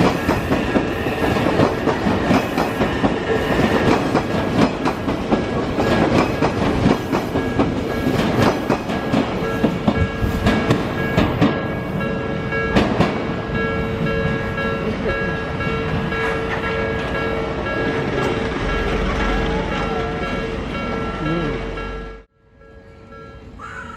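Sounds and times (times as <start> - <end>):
train wheels clacking over rails: 0.0 - 11.8, 12.7 - 13.4
level-crossing warning bell: 0.0 - 23.7.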